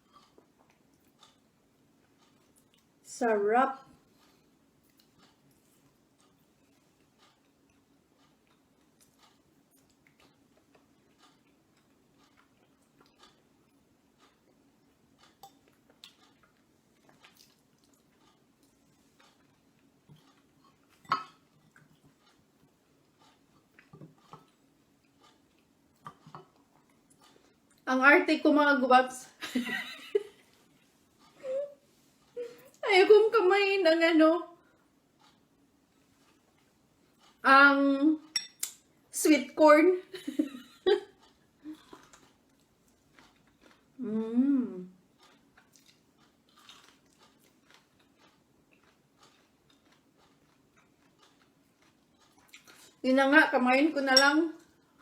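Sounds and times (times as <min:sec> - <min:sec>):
person eating soup: 0:00.0 - 0:01.4
mouth noises of chewing: 0:00.0 - 0:03.0, 0:04.0 - 0:27.8, 0:41.1 - 0:53.0
woman's wordless vocal sound: 0:44.0 - 0:45.0.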